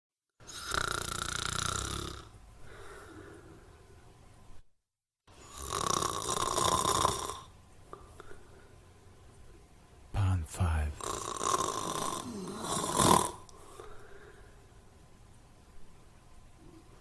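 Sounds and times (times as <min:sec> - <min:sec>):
loud snoring: 0:00.4 - 0:02.3, 0:05.4 - 0:07.5, 0:11.0 - 0:13.4
soft breathing: 0:02.6 - 0:04.0, 0:13.5 - 0:14.8.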